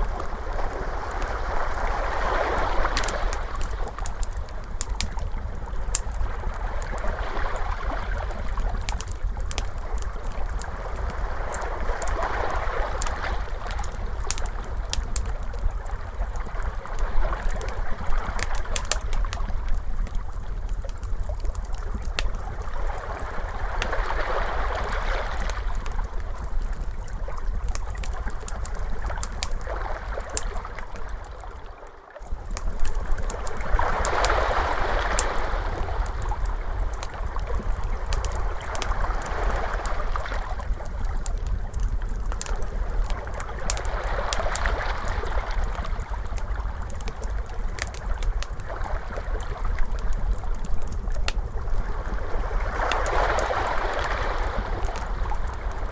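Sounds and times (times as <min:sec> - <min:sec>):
ocean waves washing: 0:00.0 - 0:04.8, 0:32.4 - 0:41.5, 0:51.8 - 0:55.9
wood fire crackling: 0:00.0 - 0:31.6, 0:32.2 - 0:55.9.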